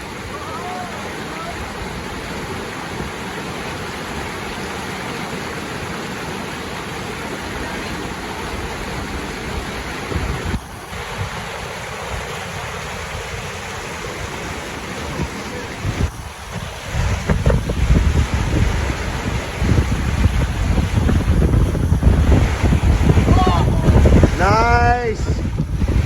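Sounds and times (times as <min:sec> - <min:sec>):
river rapids rushing: 0:00.0 - 0:26.0
wind bumps on microphone: 0:08.5 - 0:26.0.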